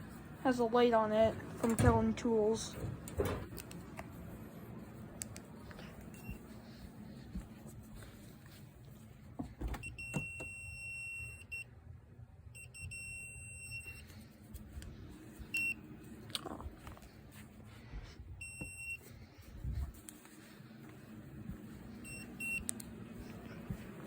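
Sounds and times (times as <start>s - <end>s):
voltage tester beeping: 9.8s - 11.7s, 12.6s - 14.0s, 18.4s - 19.0s, 22.0s - 22.8s.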